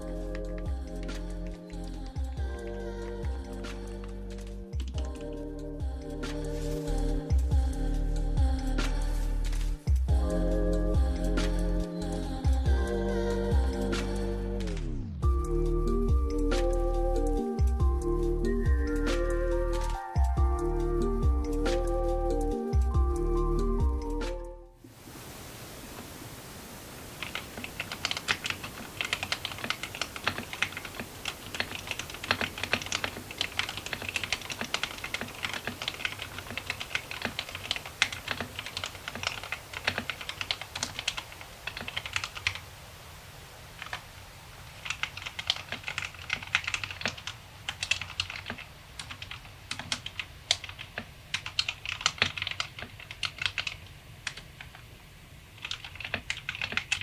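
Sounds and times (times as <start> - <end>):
typing on mechanical keyboard: 27.2 - 42.6, 44.8 - 54.8, 55.6 - 57.0.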